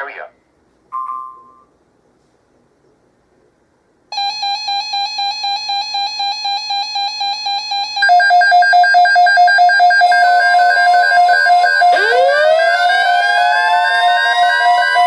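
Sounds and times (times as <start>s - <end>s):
electronic alarm beeping: 4.1s - 15.0s.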